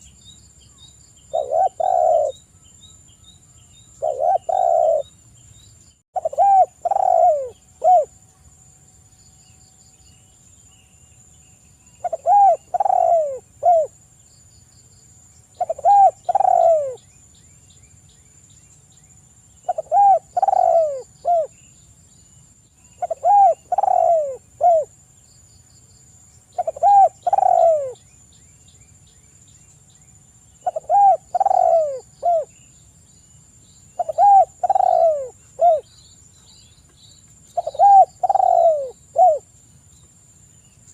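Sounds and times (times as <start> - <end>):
dove cooing: 1.3 - 2.4, 4.0 - 5.1, 6.2 - 8.2, 12.0 - 14.0, 15.6 - 17.0, 19.6 - 21.6, 23.0 - 24.9, 26.6 - 28.0, 30.6 - 32.5, 34.0 - 35.9, 37.6 - 39.5.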